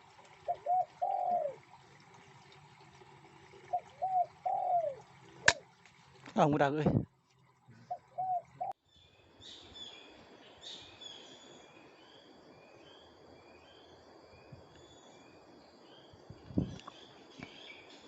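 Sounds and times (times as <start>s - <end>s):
rural background hiss: 0.0s - 18.0s
bird chirping: 7.7s - 18.0s.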